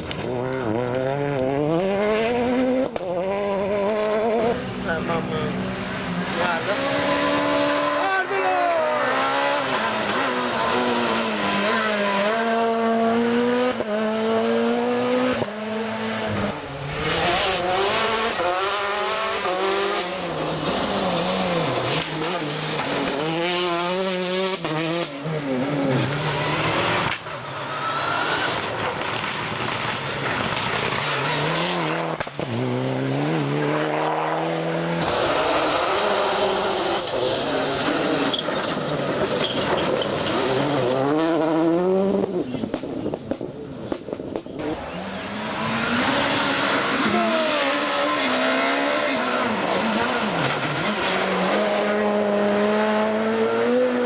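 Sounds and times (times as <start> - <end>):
rally car engines revving: 0.0 - 54.0
tyres on gravel: 27.8 - 32.6.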